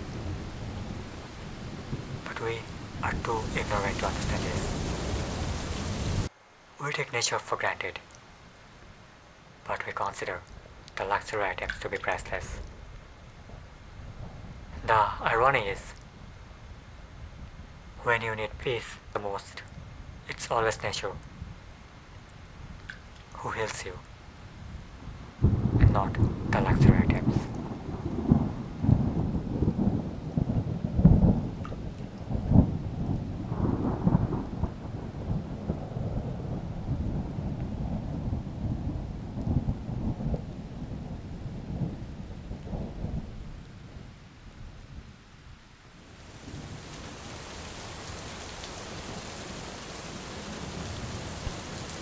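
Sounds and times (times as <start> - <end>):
thunder rumbling: 0.0 - 6.3, 10.1 - 18.7, 24.6 - 44.6, 45.9 - 52.0
rain hiss: 0.0 - 52.0.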